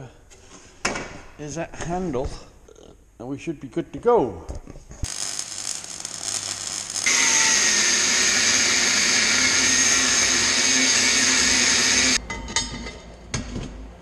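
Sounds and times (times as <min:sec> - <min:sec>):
electric power tool running: 0:05.1 - 0:12.2.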